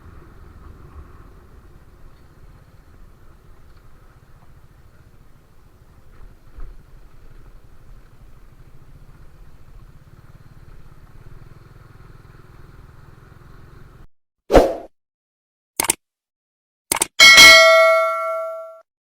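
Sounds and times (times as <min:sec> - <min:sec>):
motorcycle engine running: 0:00.0 - 0:14.1.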